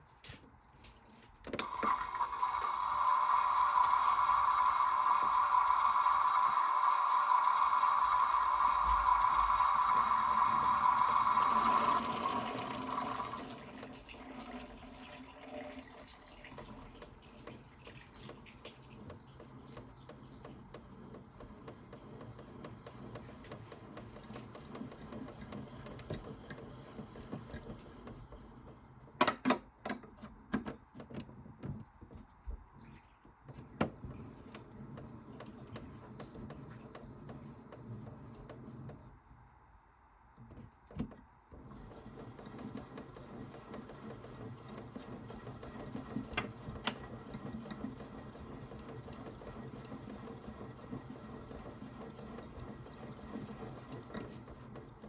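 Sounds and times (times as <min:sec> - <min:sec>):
toy washing machine running: 0:01.6 - 0:28.9, 0:41.6 - 0:55.0
steady high tone: 0:01.9 - 0:12.6.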